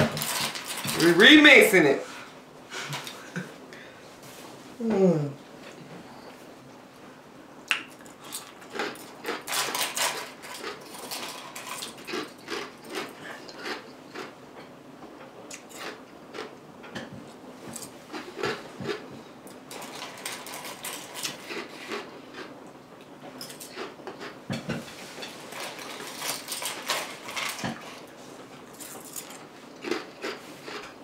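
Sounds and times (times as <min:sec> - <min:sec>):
ice being chewed: 0:08.0 - 0:14.3, 0:15.5 - 0:16.5, 0:17.7 - 0:22.5, 0:23.4 - 0:24.4, 0:25.2 - 0:31.0.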